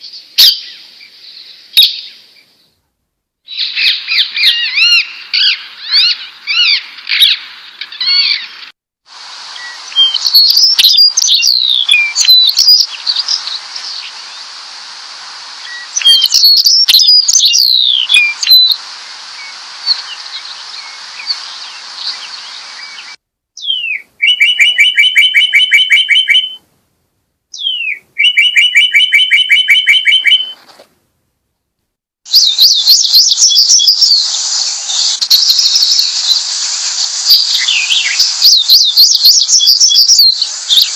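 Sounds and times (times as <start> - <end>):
bird trilling: 3.5 - 8.6, 9.6 - 14.6, 15.5 - 26.5, 32.3 - 40.9
songbirds chirping: 9.5 - 26.6, 32.4 - 40.9.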